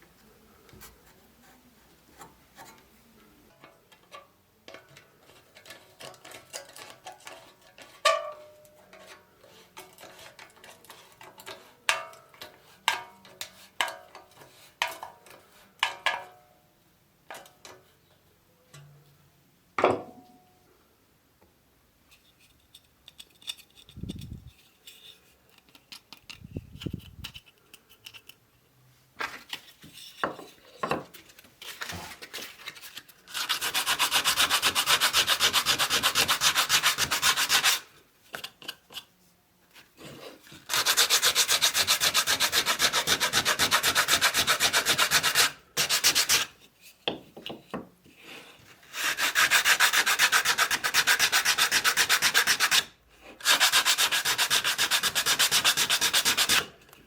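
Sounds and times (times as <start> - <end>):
sandpaper rubbing: 33.3 - 37.8, 40.7 - 46.5, 48.9 - 56.6.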